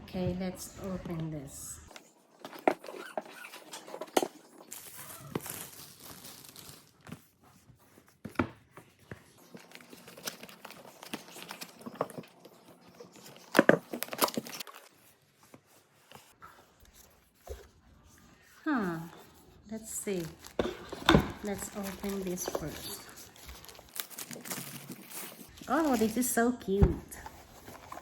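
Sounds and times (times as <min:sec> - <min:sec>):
wrapping crinkling and tearing: 0:01.9 - 0:07.4, 0:09.3 - 0:15.3, 0:19.8 - 0:26.5
handling clicks and knocks: 0:20.4 - 0:25.2.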